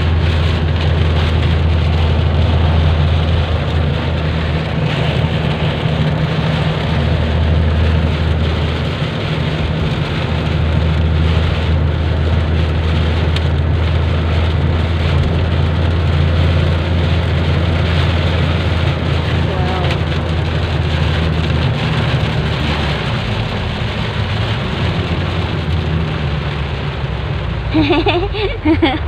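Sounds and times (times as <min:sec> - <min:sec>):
car and road rumble: 0:00.0 - 0:29.0
heavy rain drumming on car: 0:00.0 - 0:29.0.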